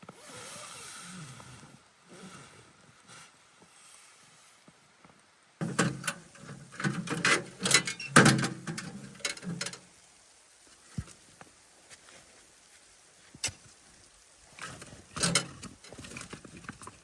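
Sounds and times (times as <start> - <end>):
handling clicks knocks and rustles: 5.6 - 9.9, 14.6 - 17.0.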